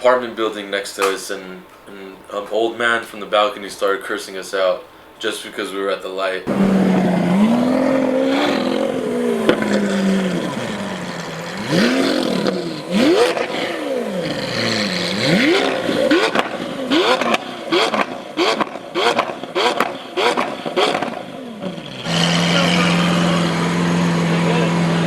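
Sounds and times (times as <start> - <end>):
exhaust pops: 6.5 - 23.4
car engine revving: 6.5 - 25.0.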